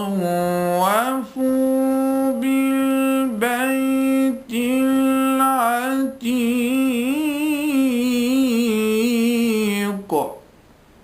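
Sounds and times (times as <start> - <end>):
man chanting melodically: 0.0 - 10.5.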